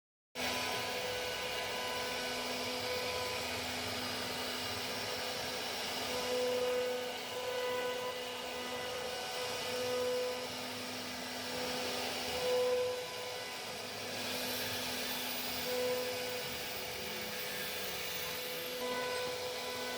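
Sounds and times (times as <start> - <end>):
cnc router spindle cutting plastic: 0.4 - 19.9.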